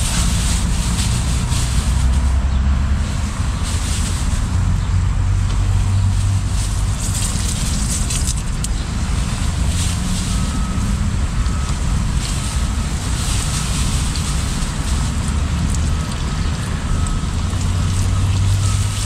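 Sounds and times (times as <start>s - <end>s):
fish frying in hot oil: 11.5s - 19.0s.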